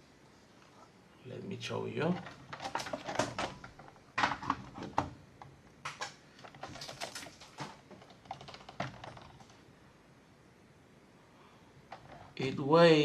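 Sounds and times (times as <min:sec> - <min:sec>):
mechanical keyboard clicking and rattling: 0:05.9 - 0:09.6.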